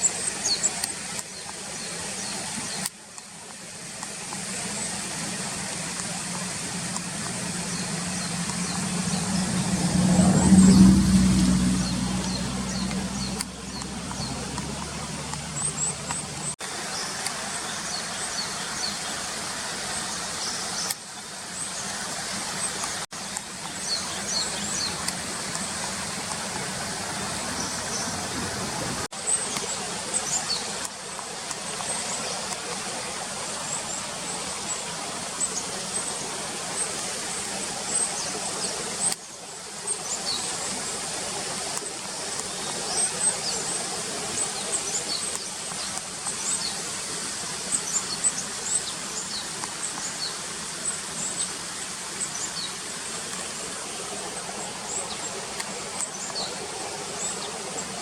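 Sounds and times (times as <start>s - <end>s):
passing road vehicles: 5.6s - 16.6s, 22.9s - 29.1s.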